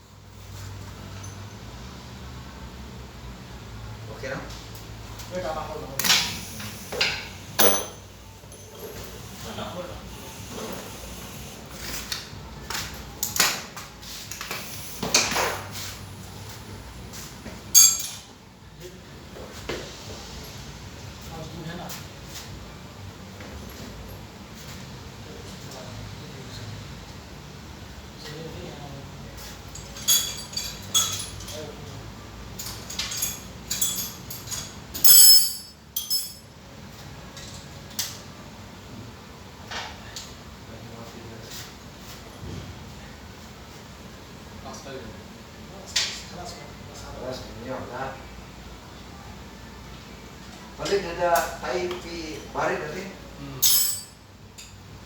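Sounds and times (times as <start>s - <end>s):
metal tools clinking: 6.0s - 9.2s, 17.7s - 18.3s, 29.7s - 31.7s, 32.6s - 36.4s, 53.6s - 54.8s
metal hand tools clattering: 17.8s - 18.2s, 33.0s - 36.4s, 53.6s - 54.2s.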